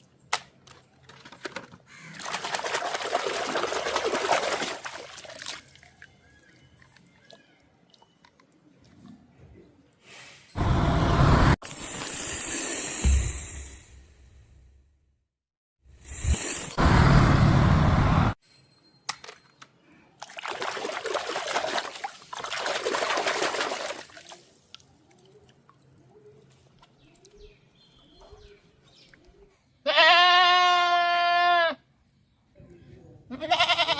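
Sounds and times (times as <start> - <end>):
water pouring and splashing: 2.1 - 8.2, 20.2 - 27.4.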